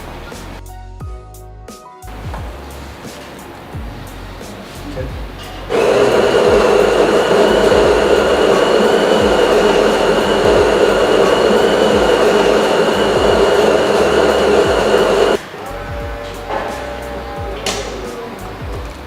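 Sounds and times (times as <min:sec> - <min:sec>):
coffee machine humming: 0:05.7 - 0:15.4
thin high whine: 0:05.7 - 0:15.4.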